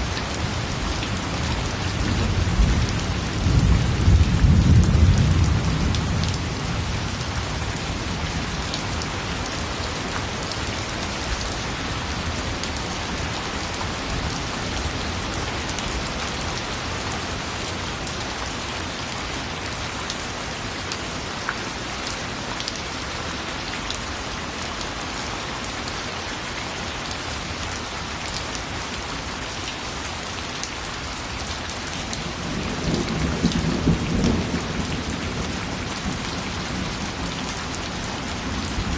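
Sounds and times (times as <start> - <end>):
steady rain falling: 0.0 - 38.9
low thunder rumbling: 2.0 - 7.2, 32.3 - 37.3.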